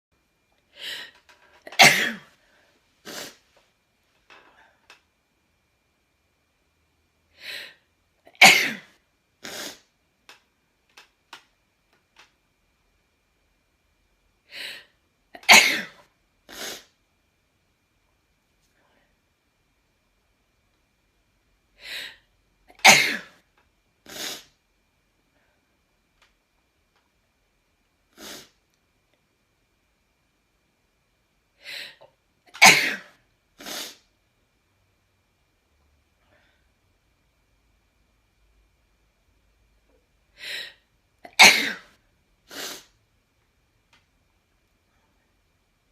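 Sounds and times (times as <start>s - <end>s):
in-breath: 0.7s - 1.3s, 7.3s - 7.9s, 21.8s - 22.3s, 31.6s - 32.1s, 36.2s - 36.8s, 40.4s - 40.9s
person sneezing: 1.7s - 2.4s, 8.3s - 9.9s, 15.4s - 16.9s, 22.8s - 23.4s, 32.5s - 34.0s, 41.3s - 42.9s
short sniffs: 3.0s - 3.5s, 9.4s - 9.9s, 16.5s - 16.9s, 24.1s - 24.6s, 28.2s - 28.6s, 33.6s - 34.1s, 42.5s - 42.9s.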